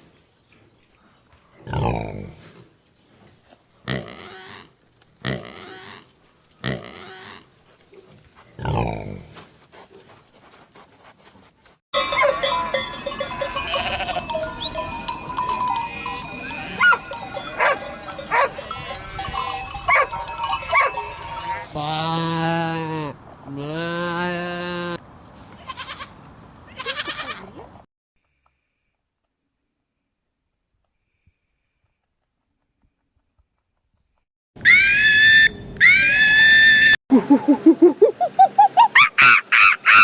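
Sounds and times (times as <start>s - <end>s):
farm animals calling: 12.0s - 25.0s.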